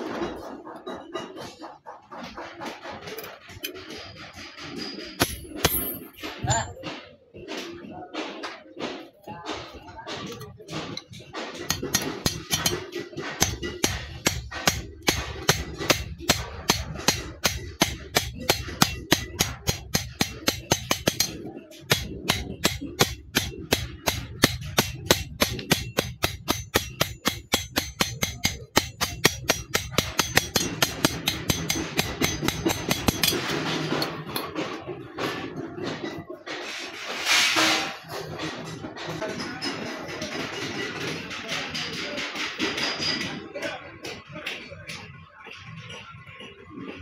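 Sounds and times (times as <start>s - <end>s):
hammer striking metal: 0.0s - 7.6s, 8.8s - 36.3s.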